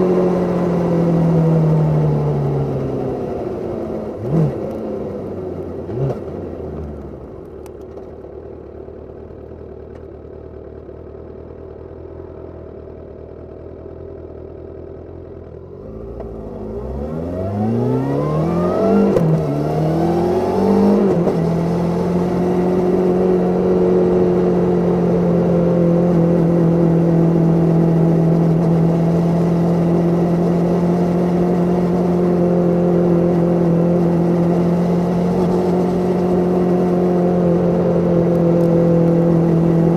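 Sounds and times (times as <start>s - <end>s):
motorcycle engine revving: 0.0s - 7.1s, 15.6s - 39.9s.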